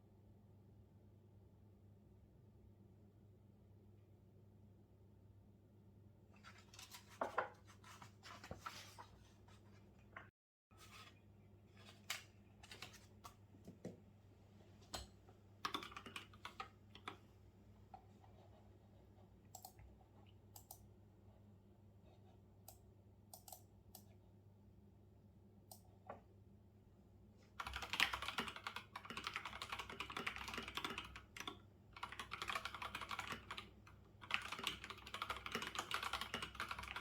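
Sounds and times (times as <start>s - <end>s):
typing on computer keyboard: 15.6s - 17.2s, 19.5s - 19.8s, 27.6s - 37.0s.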